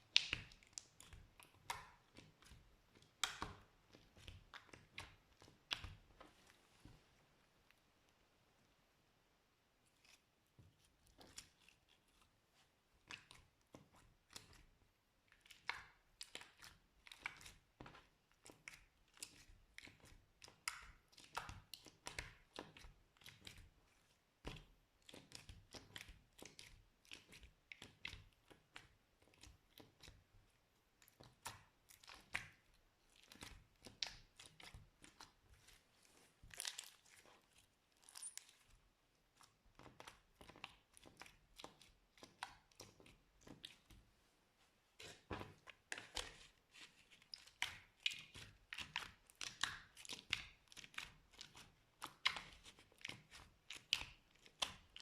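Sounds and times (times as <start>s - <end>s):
slime crackling and popping: 0.1s - 6.0s, 36.5s - 37.3s.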